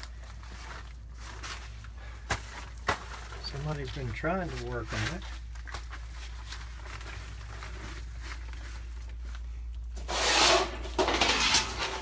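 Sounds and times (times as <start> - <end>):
steady low hum: 0.0 - 12.0
harsh scraping rustle: 10.0 - 12.0.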